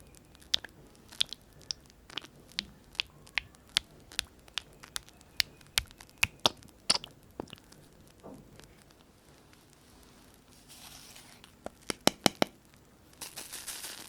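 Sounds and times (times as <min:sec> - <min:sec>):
sticky slime clicks and pops: 0:00.3 - 0:07.8.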